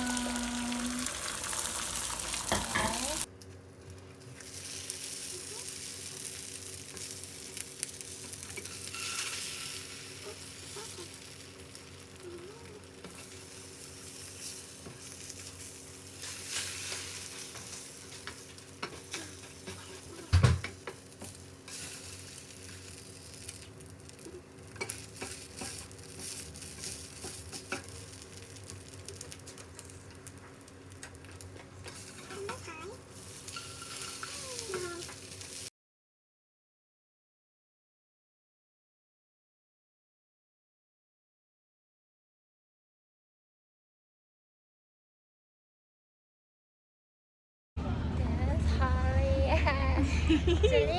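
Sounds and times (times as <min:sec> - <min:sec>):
faint steady hum: 0:00.0 - 0:03.3
food sizzling in a pan: 0:00.0 - 0:03.3, 0:03.9 - 0:35.7.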